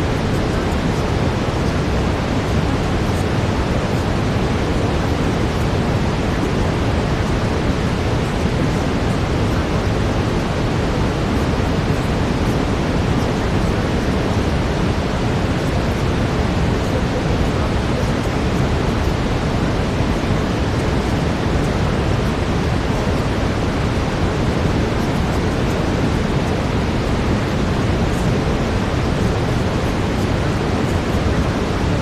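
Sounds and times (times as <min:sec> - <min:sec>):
brown noise: 0:00.0 - 0:32.0.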